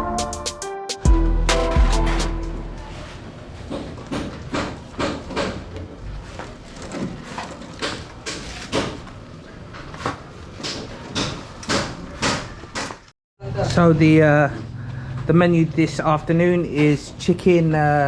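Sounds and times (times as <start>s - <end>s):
sharp knocks: 3.7s - 5.6s.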